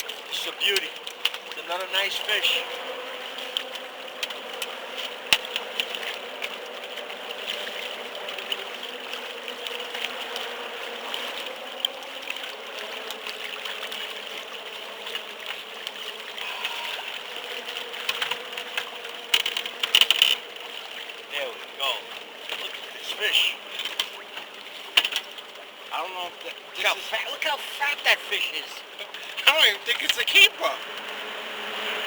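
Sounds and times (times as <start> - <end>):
small clicks and ticks: 0.0 - 16.4, 17.2 - 21.3, 22.0 - 25.8
water lapping around boat: 0.0 - 32.0.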